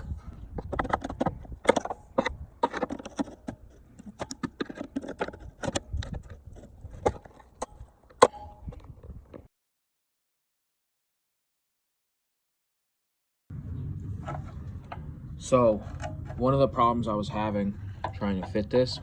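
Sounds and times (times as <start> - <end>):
plastic clicks and knocks: 0.0 - 9.5.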